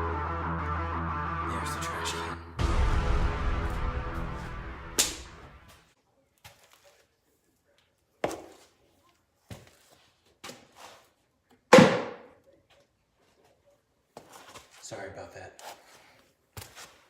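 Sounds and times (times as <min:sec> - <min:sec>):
strummed guitar chord: 0:00.0 - 0:05.0.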